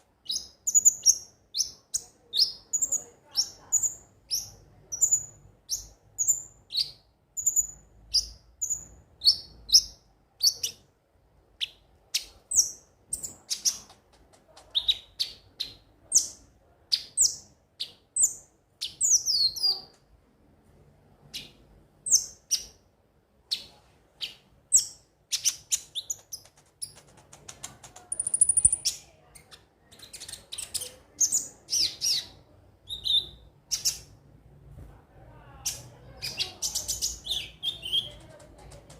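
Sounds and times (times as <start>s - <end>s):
sunbird chirping and singing: 28.1s - 29.0s.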